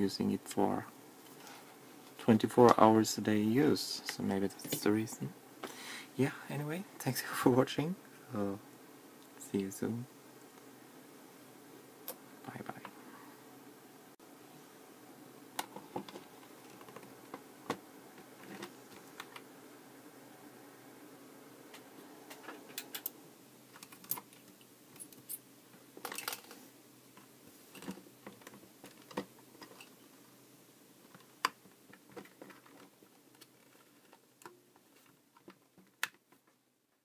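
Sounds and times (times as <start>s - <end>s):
faint steady hum: 0.0s - 37.0s.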